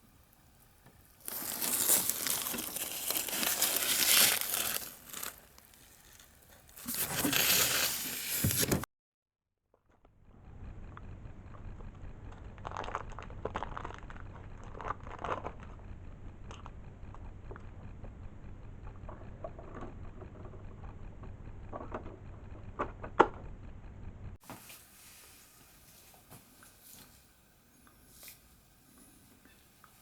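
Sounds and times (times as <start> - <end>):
hands rustling and crunching: 1.2 - 8.4
low steady hum: 10.2 - 30.0.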